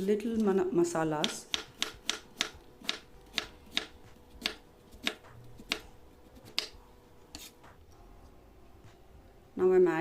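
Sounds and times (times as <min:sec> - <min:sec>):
knife chopping on board: 0:01.2 - 0:07.8.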